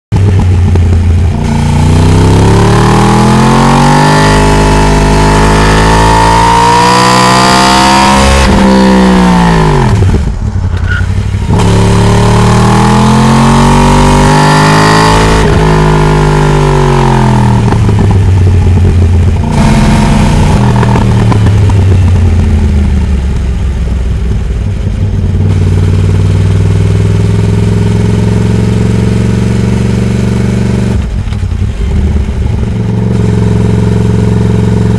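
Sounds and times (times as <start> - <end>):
motorcycle engine revving: 0.1 - 34.9.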